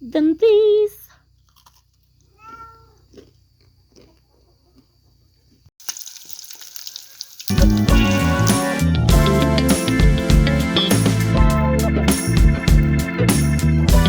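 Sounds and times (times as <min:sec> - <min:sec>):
cat meowing: 0:02.3 - 0:03.0
loud music: 0:07.6 - 0:14.0.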